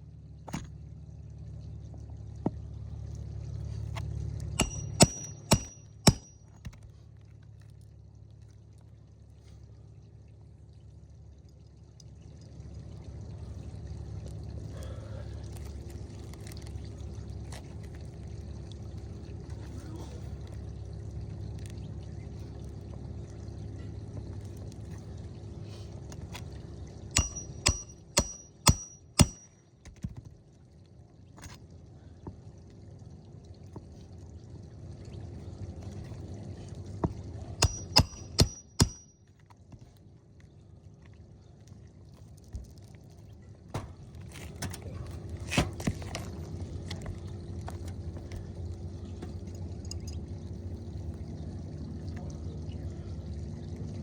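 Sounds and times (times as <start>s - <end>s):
hammer striking metal bar: 4.6s - 6.5s, 27.2s - 29.5s, 37.6s - 39.2s.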